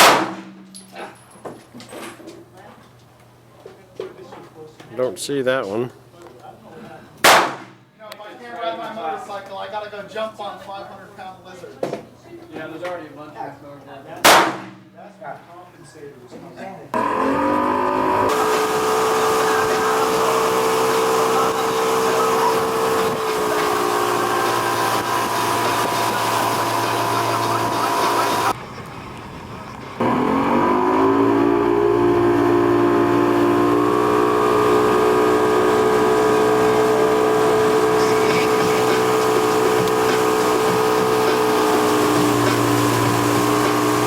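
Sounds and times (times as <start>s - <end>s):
engine running: 0.0s - 1.0s, 17.0s - 44.0s.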